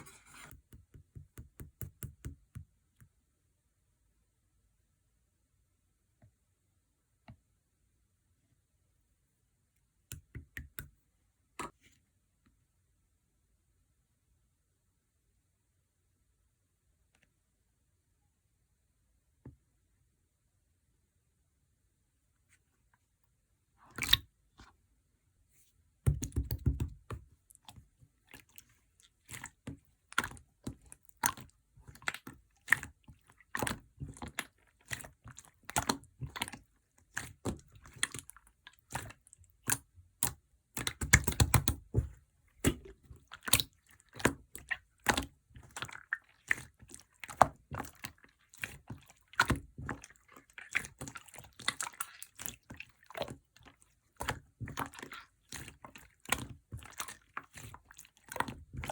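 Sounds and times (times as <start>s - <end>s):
slime clicking and squelching: 23.8s - 24.7s, 26.1s - 58.9s.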